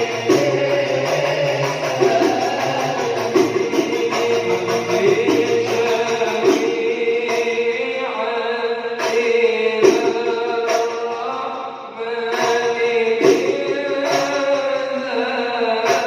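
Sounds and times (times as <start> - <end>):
devotional chanting: 0.0 - 16.0.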